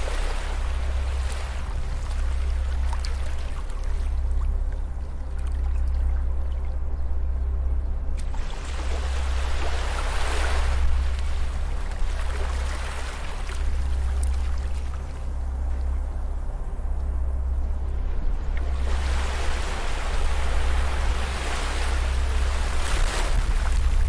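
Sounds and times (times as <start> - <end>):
waves washing onto shore: 0.0 - 4.3, 8.2 - 15.3, 18.4 - 24.0
steady low rumble: 0.0 - 24.0.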